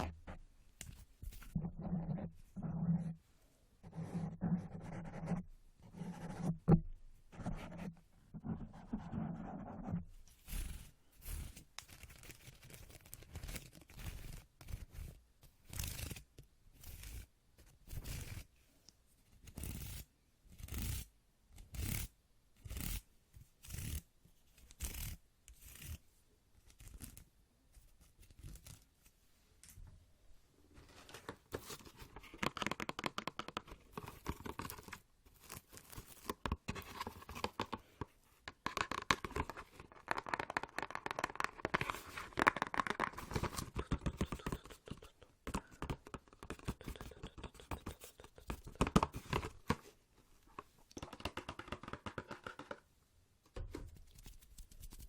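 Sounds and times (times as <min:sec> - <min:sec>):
hands rubbing: 0:38.7 - 0:49.4.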